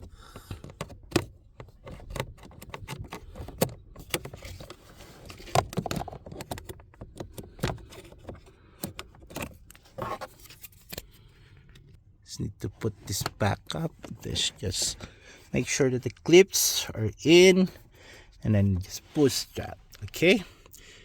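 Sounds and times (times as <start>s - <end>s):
plastic parts clicking and rattling: 0.0s - 11.9s.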